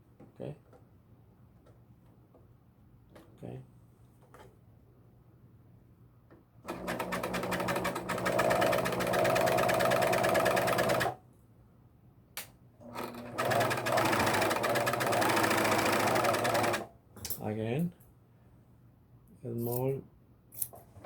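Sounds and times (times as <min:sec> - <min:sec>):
serger sewing machine running: 0:06.7 - 0:11.2, 0:12.8 - 0:16.9.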